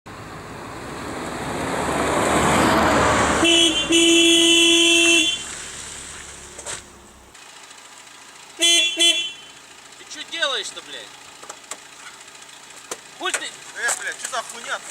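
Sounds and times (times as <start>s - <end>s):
traffic noise: 0.1s - 14.9s
car horn honking: 3.2s - 5.7s, 8.6s - 9.9s.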